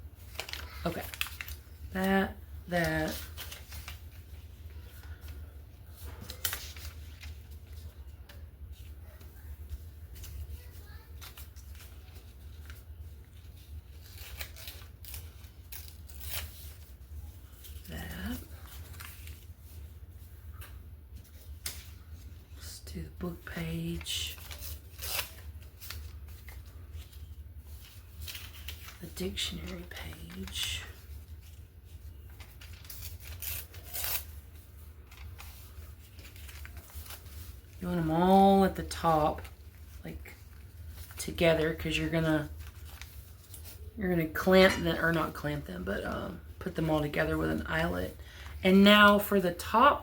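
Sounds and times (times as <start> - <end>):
paper rustling and tearing: 0.2 - 22.7, 23.5 - 45.6
paper tearing: 13.9 - 16.9, 24.2 - 26.8, 32.3 - 37.8.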